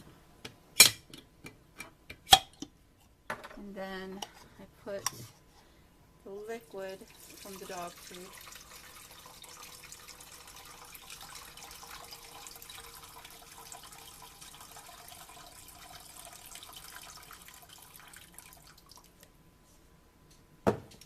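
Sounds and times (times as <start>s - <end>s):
liquid pouring into pot: 7.0s - 19.2s.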